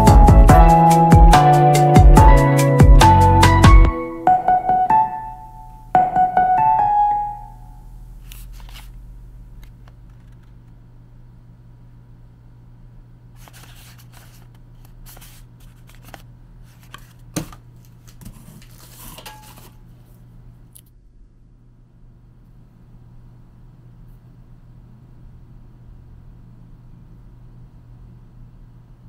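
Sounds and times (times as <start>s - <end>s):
steady low hum: 5.3s - 29.0s.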